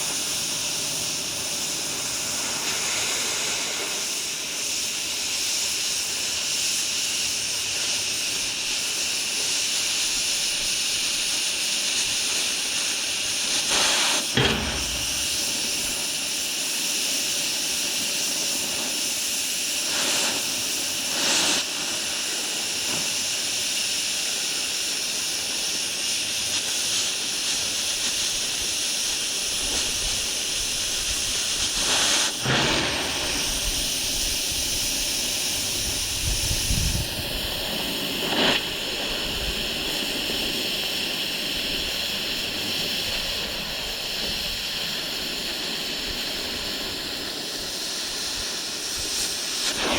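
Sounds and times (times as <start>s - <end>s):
welding arc crackling and hissing: 0.0s - 49.9s.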